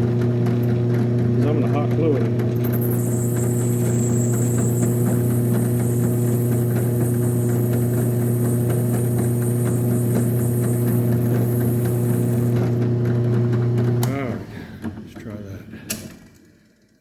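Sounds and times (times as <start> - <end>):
drill press motor hum: 2.4 - 14.1.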